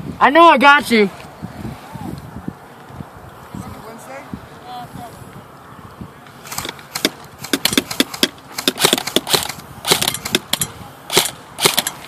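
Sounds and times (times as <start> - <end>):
airsoft guns firing: 6.5 - 12.0.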